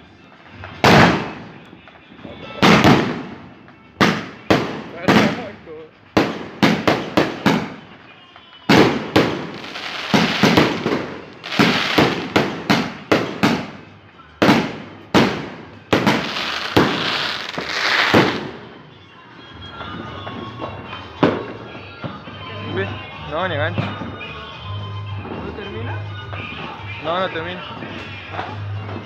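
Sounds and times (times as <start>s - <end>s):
fireworks crackling: 0.0s - 19.0s, 19.6s - 22.9s, 23.6s - 29.0s
fireworks bangs: 0.3s - 8.1s, 8.7s - 19.0s, 19.6s - 22.4s.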